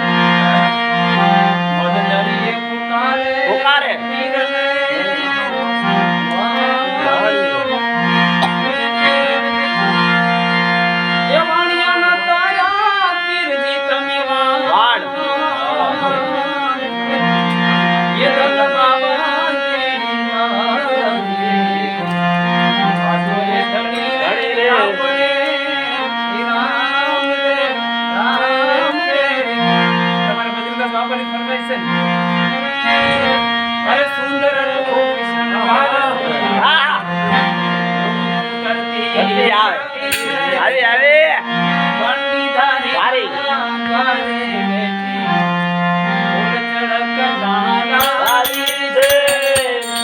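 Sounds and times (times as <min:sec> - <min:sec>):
harmonium chords: 0:00.0 - 0:50.0
tabla: 0:48.0 - 0:50.0.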